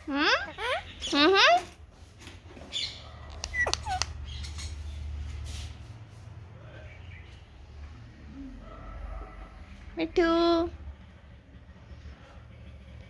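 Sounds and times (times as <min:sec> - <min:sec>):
parrot squawks: 0:00.2 - 0:01.7, 0:02.8 - 0:04.2.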